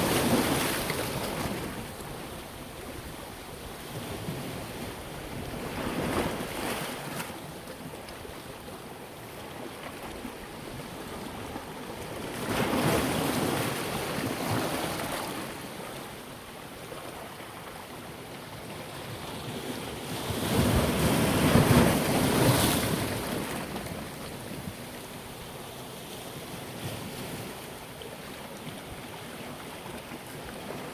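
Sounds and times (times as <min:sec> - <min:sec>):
waves breaking on shore: 0:00.0 - 0:02.4.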